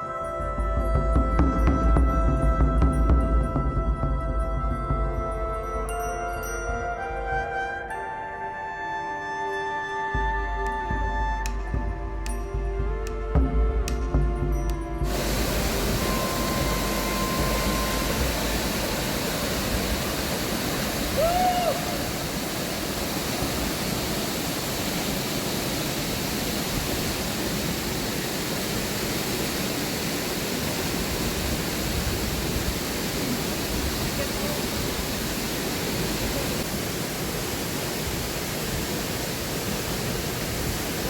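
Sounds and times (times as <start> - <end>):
waterfall roaring: 15.0 - 41.0.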